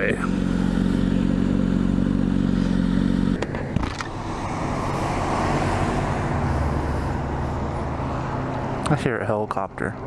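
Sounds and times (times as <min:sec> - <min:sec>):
motorcycle engine running: 0:00.0 - 0:03.9
road and traffic noise: 0:00.0 - 0:10.0.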